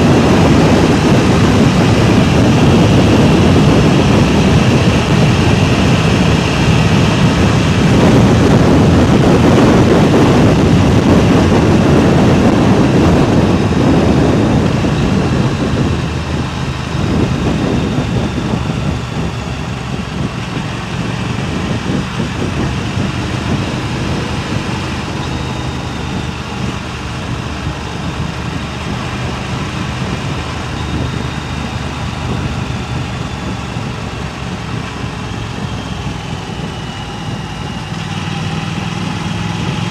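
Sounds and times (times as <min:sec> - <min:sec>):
wind buffeting a microphone: 0:00.0 - 0:39.9.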